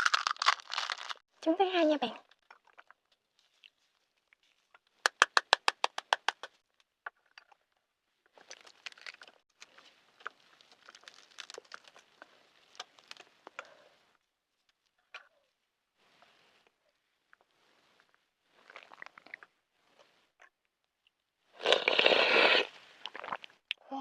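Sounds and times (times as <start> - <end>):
eggshell crackling: 0.0 - 1.2, 8.3 - 13.4.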